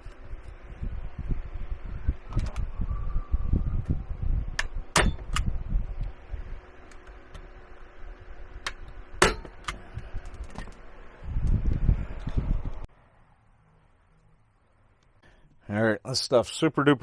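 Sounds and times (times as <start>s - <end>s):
low rumble: 0.0s - 12.9s.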